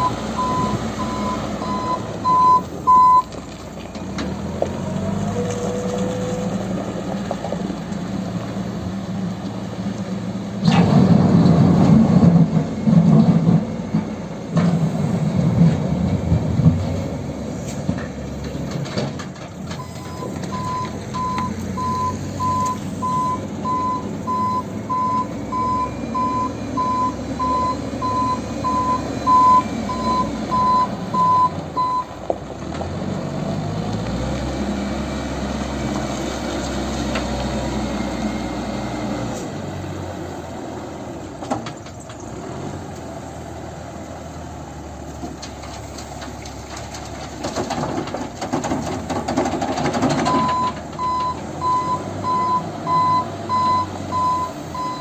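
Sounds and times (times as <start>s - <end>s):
reversing alarm beeping: 0.0s - 3.3s, 19.8s - 32.1s, 50.3s - 55.0s
deep engine rumble: 0.0s - 49.3s
diesel engine running: 0.0s - 55.0s.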